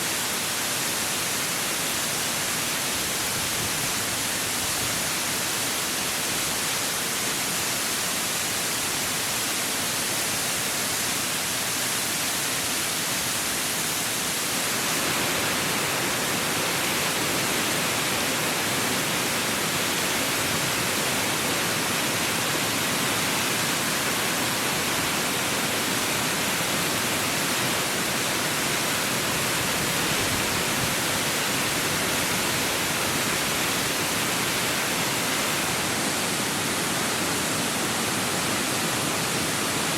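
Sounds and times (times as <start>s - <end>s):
waterfall rushing: 0.0s - 39.9s.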